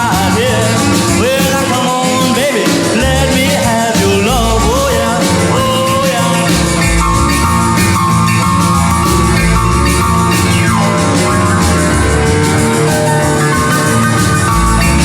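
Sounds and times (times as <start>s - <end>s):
rock band music: 0.0s - 15.0s.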